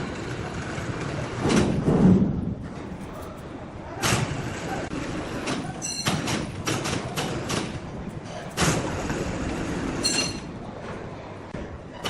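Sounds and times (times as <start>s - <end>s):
sawmill machinery: 4.0s - 10.8s
high metallic ring: 10.0s - 10.6s.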